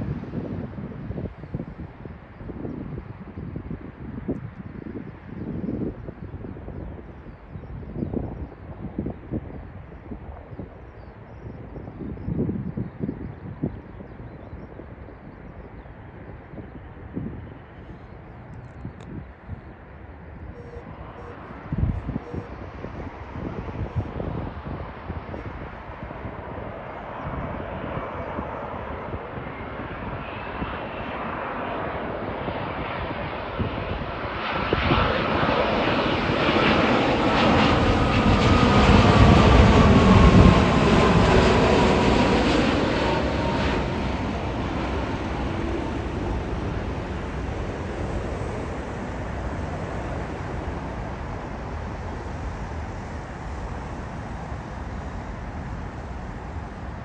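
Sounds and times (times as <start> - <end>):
jet airliner engine noise: 0.0 - 57.0
wind rumbling on microphone: 0.0 - 57.0
falling engine whine: 37.1 - 57.0.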